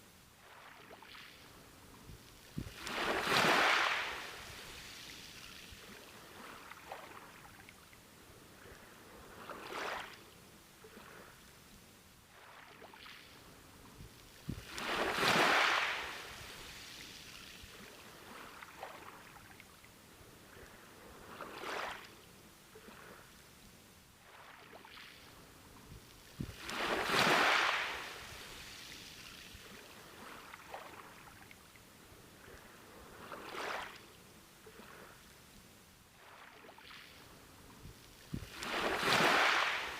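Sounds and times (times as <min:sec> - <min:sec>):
ocean waves breaking: 0:00.4 - 0:07.6, 0:14.5 - 0:19.5, 0:26.4 - 0:31.4, 0:38.3 - 0:39.9.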